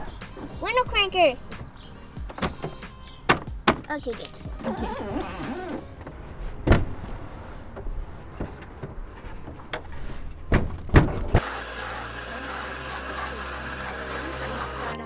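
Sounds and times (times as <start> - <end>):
background music: 0.0 - 8.3, 11.4 - 15.0
window crank rattling: 0.0 - 15.0
sharp door clunks: 0.1 - 11.4.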